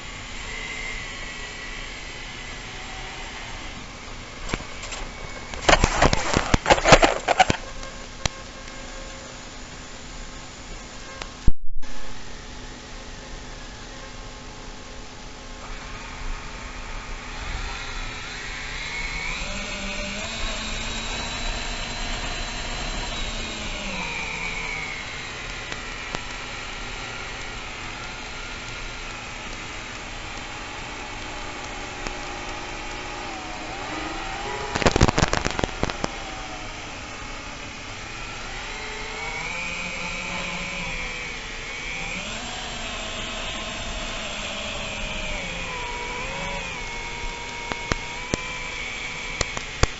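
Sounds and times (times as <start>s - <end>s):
drone motors whining: 0.0s - 11.4s, 12.3s - 49.9s
crackling knocks: 4.5s - 8.4s, 34.7s - 36.2s.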